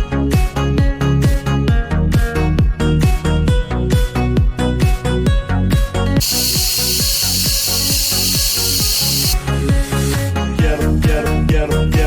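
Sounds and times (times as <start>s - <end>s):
electronic dance music: 6.2s - 9.4s.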